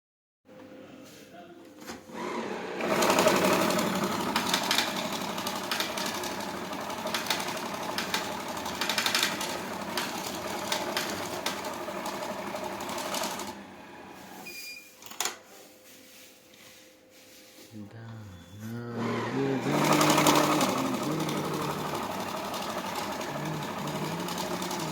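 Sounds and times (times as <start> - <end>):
banknote sorting machine whirring: 2.1 - 14.5, 18.9 - 24.9
short beep: 14.4 - 14.9.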